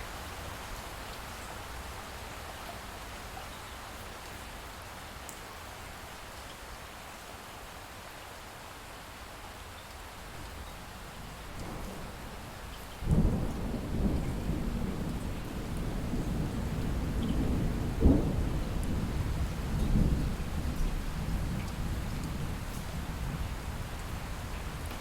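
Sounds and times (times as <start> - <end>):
light rain falling: 0.0 - 25.0
distant thunder rumbling: 11.4 - 25.0.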